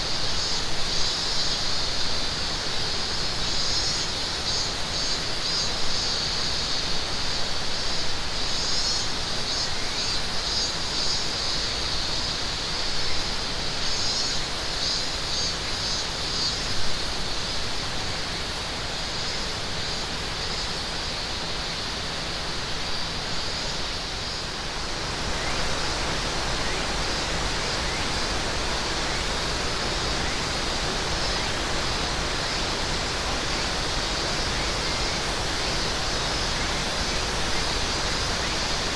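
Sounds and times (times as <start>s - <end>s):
cicadas trilling: 0.0s - 38.9s.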